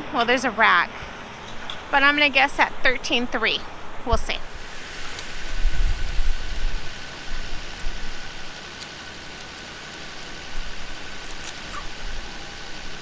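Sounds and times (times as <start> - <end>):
outdoor background hiss: 0.0 - 13.0
low rumbling: 3.6 - 13.0.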